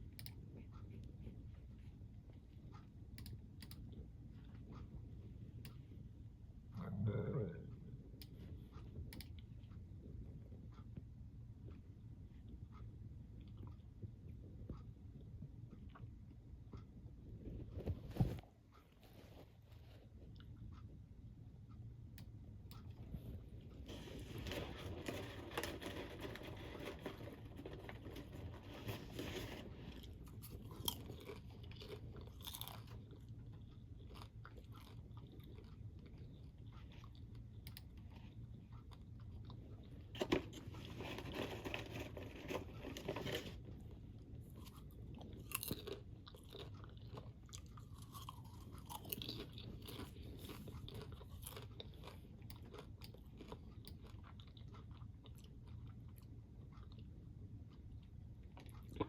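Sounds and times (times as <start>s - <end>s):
crunchy snack chewing: 23.9s - 43.8s, 44.4s - 57.1s.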